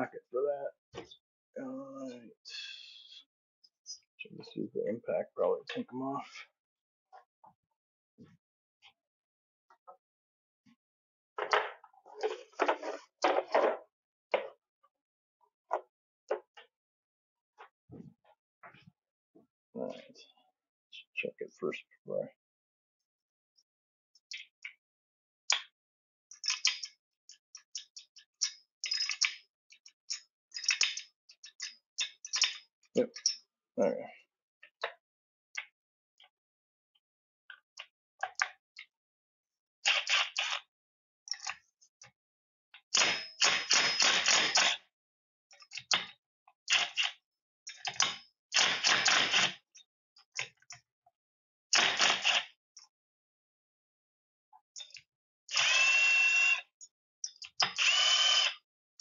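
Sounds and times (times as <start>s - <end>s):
small clicks: 26.3s - 27.0s, 27.8s - 33.4s, 41.3s - 42.1s, 46.7s - 49.5s.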